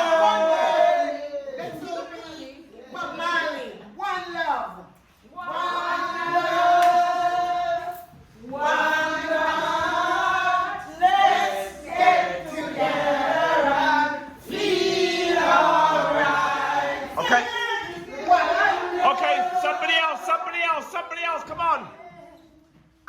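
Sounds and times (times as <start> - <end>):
group of voices singing: 0.0 - 2.2, 5.3 - 21.0.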